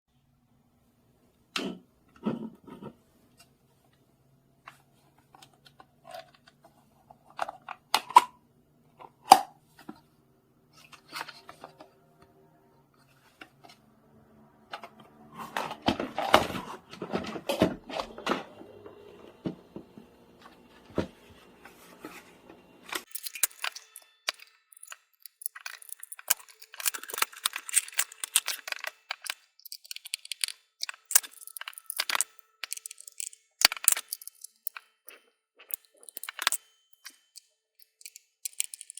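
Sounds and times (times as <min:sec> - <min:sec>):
plastic and paper crinkling: 0:23.1 - 0:34.9
small plastic parts clicking: 0:23.1 - 0:35.1, 0:35.7 - 0:38.9.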